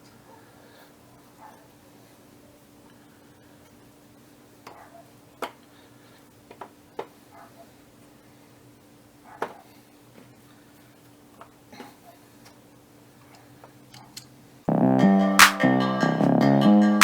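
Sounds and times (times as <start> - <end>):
electronic music with drum beat: 14.7 - 17.0.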